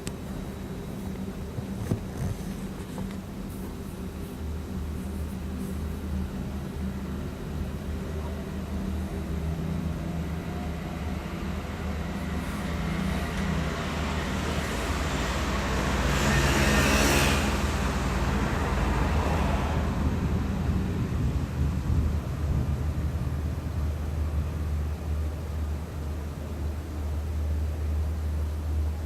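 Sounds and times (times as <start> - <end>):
low engine hum: 0.0 - 29.0
vehicle passing by: 12.2 - 20.8.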